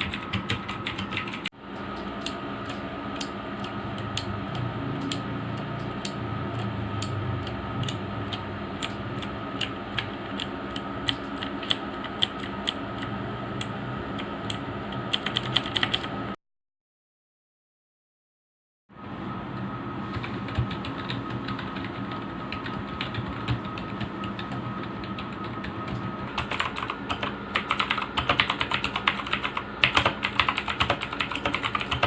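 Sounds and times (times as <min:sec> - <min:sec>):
mechanical keyboard clicks: 0:00.0 - 0:16.1, 0:26.4 - 0:32.0
steady hum: 0:00.0 - 0:16.4, 0:18.9 - 0:32.0.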